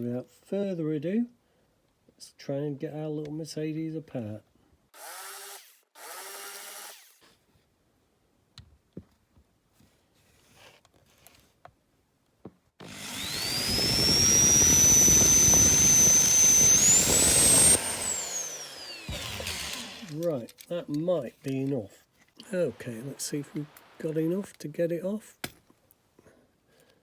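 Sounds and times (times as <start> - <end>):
electric drill whining: 12.8 - 20.4.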